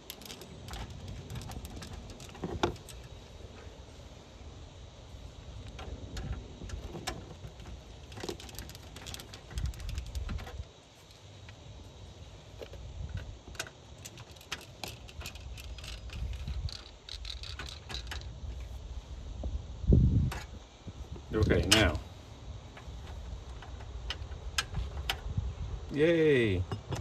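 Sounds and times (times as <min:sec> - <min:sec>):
metallic clicks and rattles: 0:00.0 - 0:03.2, 0:05.6 - 0:11.2, 0:12.6 - 0:18.8, 0:21.4 - 0:22.1, 0:22.8 - 0:25.3.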